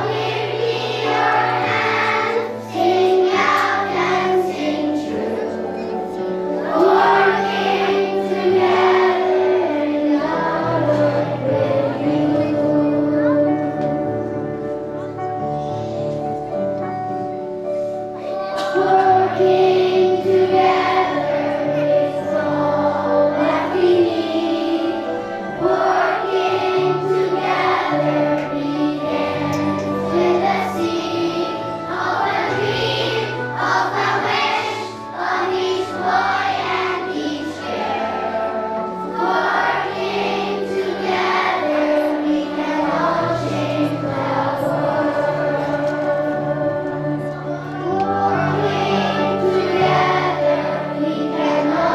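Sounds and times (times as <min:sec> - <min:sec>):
children's choir singing: 0:00.0 - 0:51.9
musical accompaniment: 0:00.0 - 0:51.9.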